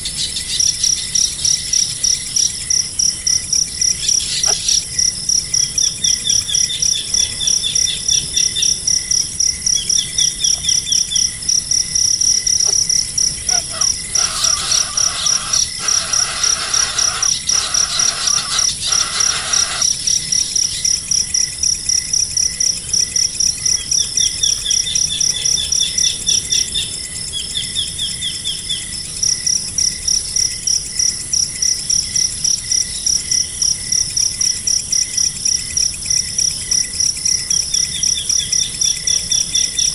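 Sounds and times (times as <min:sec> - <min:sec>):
insects chirping: 0:00.0 - 0:39.9
lower calls: 0:12.6 - 0:20.0.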